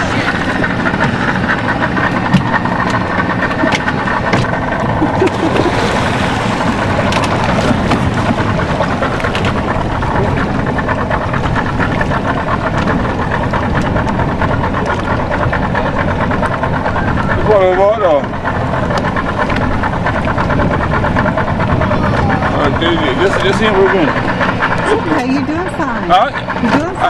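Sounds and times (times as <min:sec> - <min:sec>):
boat engine running: 0:00.0 - 0:27.0
knocks and clicks: 0:01.9 - 0:05.7.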